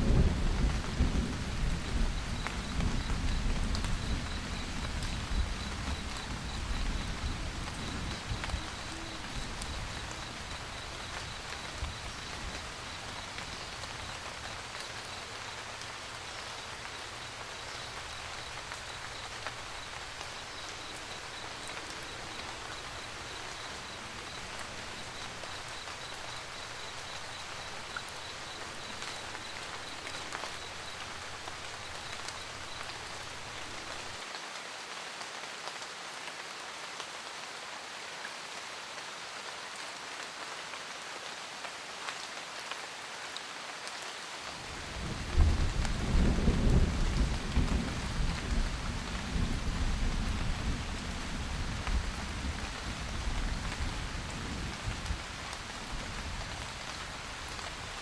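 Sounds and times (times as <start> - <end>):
steady rain falling: 0.0 - 58.0
faint high pulsing chirp: 1.6 - 15.6.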